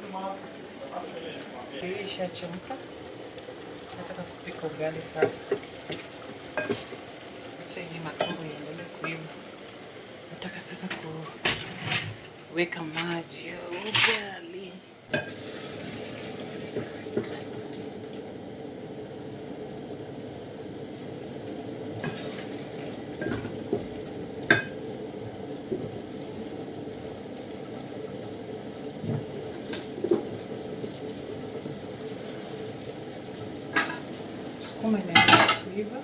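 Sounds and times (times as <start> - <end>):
food sizzling on stove: 0.0 - 36.0
metal pots and utensils clinking: 5.1 - 7.0, 10.9 - 14.4, 23.2 - 23.6, 24.4 - 24.8, 33.7 - 35.8.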